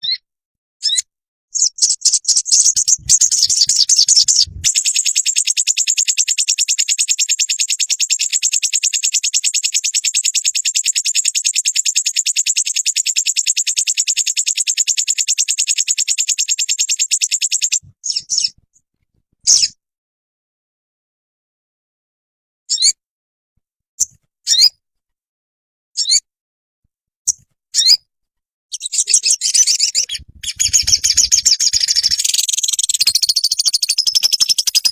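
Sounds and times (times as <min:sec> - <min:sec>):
bird chirps and trill: 0:00.0 - 0:18.6, 0:19.4 - 0:19.8, 0:22.7 - 0:23.0, 0:24.5 - 0:24.8, 0:26.0 - 0:26.3, 0:27.3 - 0:28.1, 0:28.7 - 0:34.9
low thumps: 0:02.9 - 0:04.7.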